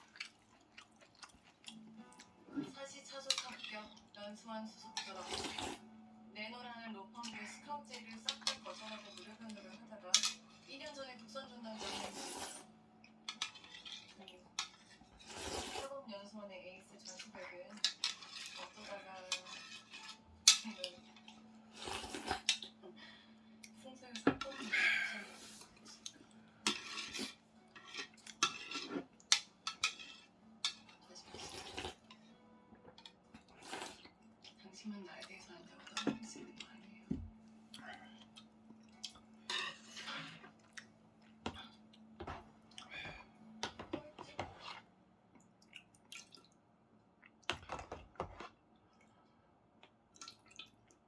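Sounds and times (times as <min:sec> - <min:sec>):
person chewing and slurping: 0:00.0 - 0:02.7, 0:05.2 - 0:05.8, 0:11.8 - 0:12.6, 0:13.4 - 0:15.9, 0:21.6 - 0:22.7, 0:31.2 - 0:32.0, 0:33.4 - 0:34.2
utensils clinking against bowl: 0:03.2 - 0:03.9, 0:08.0 - 0:10.7, 0:13.3 - 0:15.8, 0:17.1 - 0:22.7, 0:26.0 - 0:32.3, 0:35.8 - 0:36.6, 0:39.4 - 0:40.4.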